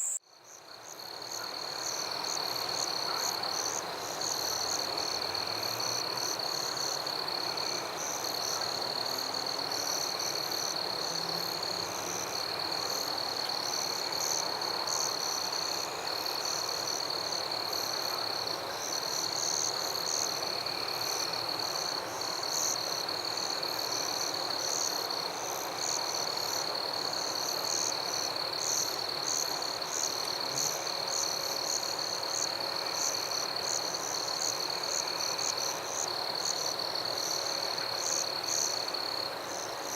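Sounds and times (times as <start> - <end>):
high trill of insects: 0.0 - 0.2.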